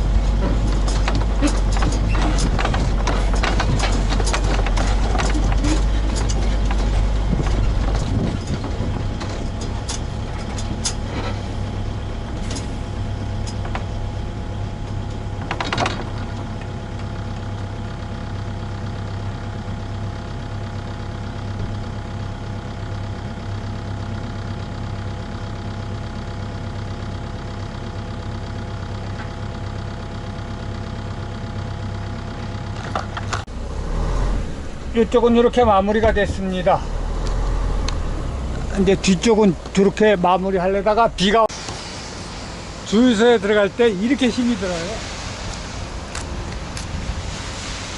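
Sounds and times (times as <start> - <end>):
short clatter: 0.0 - 11.6
diesel engine running: 0.0 - 47.9.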